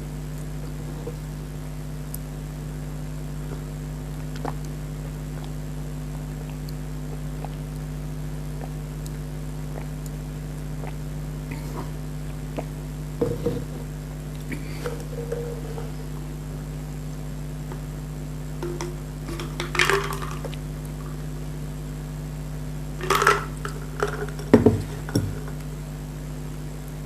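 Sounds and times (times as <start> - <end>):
steady low hum: 0.0 - 27.0
wet mouth eating sounds: 3.4 - 16.4, 18.6 - 21.4.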